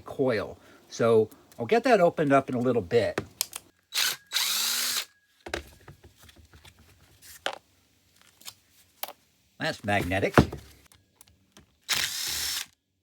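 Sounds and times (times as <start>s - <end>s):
power drill motor whine: 4.0s - 5.1s, 11.9s - 12.7s.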